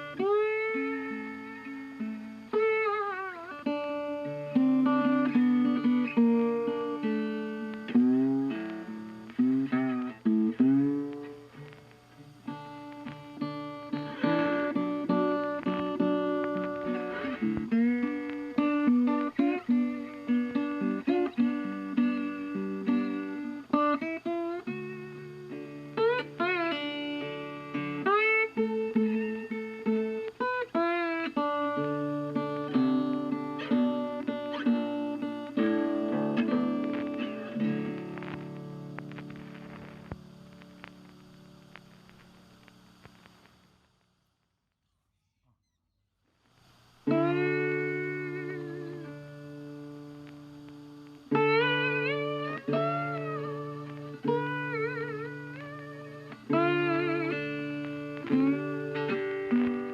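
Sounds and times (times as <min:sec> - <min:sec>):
held chords: 0:00.0 - 0:42.2, 0:47.0 - 0:59.9
plucked guitar melody: 0:00.0 - 0:42.3, 0:47.0 - 0:59.9.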